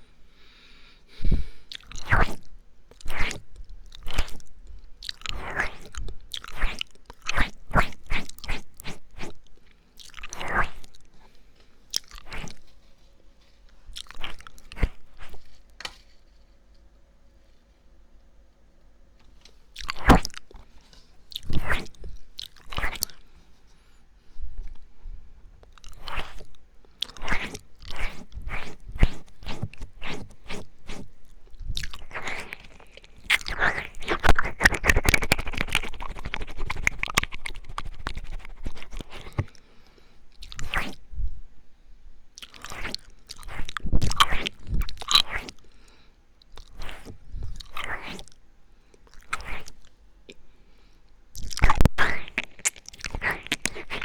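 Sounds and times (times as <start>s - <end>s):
wet mouth licking and smacking: 1.7s - 11.1s, 11.9s - 12.7s, 13.9s - 15.5s, 19.7s - 20.6s, 21.3s - 23.3s, 25.6s - 39.6s, 40.3s - 41.0s, 42.4s - 45.7s, 46.4s - 48.4s, 49.0s - 50.4s, 51.4s - 54.0s.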